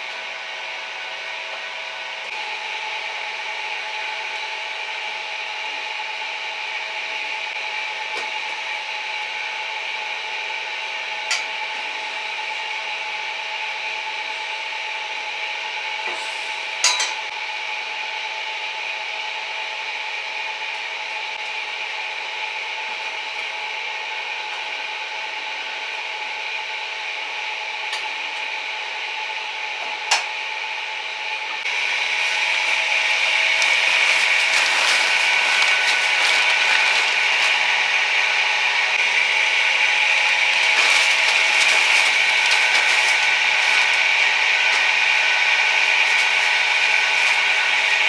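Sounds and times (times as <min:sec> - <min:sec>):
small motor humming: 0:31.7 - 0:48.0.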